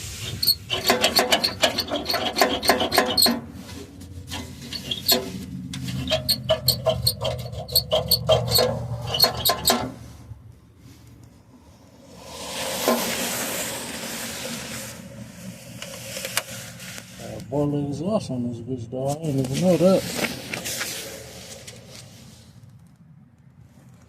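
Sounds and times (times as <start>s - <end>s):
loose metal part rattling on exhaust: 0.0s - 10.1s.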